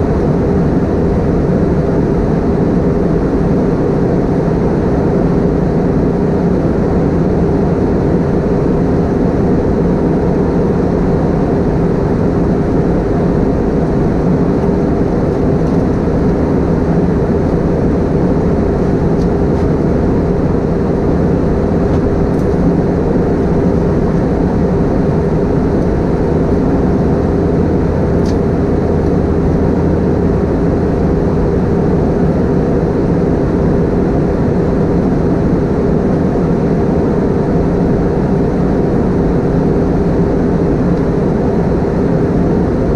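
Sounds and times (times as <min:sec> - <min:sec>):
airplane cabin engine drone: 0:00.0 - 0:42.9
constant hum: 0:00.0 - 0:42.9.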